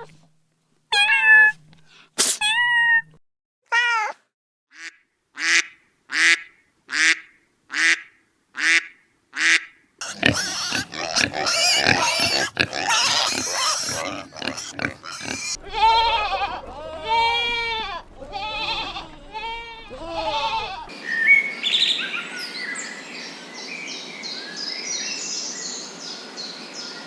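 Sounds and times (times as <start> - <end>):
dense overlapping animal calls: 10.0 - 20.9.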